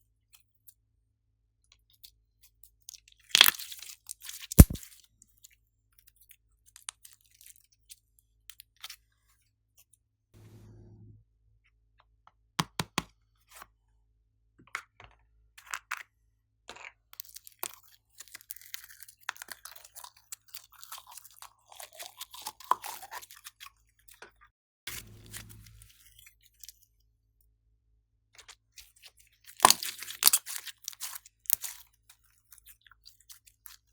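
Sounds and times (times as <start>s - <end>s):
hands squishing slime: 4.6s - 4.8s.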